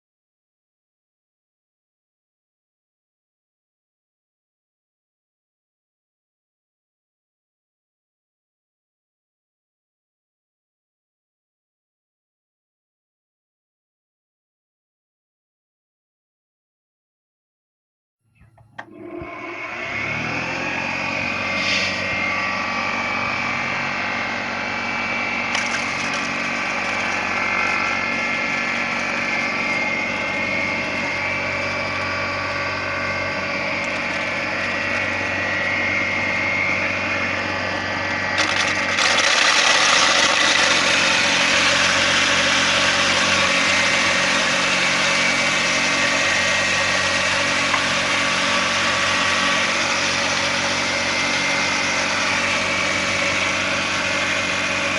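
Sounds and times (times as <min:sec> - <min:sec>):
corn grinder motor humming: 0:18.4 - 0:54.9.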